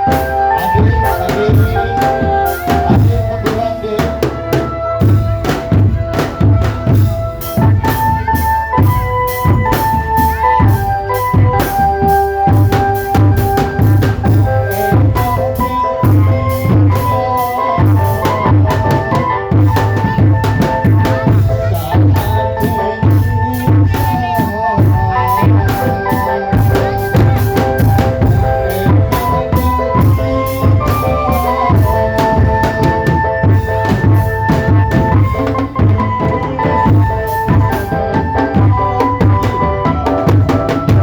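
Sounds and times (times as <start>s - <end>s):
bass and snare drums beating: 0.0s - 41.0s
melody of held notes: 0.0s - 41.0s.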